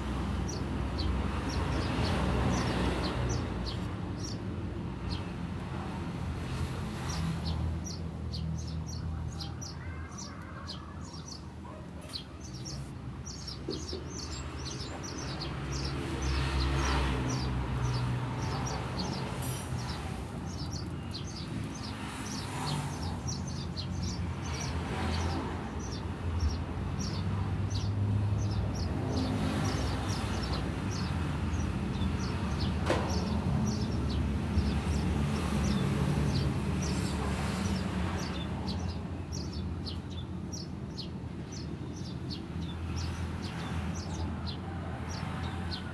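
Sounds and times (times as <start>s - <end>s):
sparrows chirping: 0.0s - 45.9s.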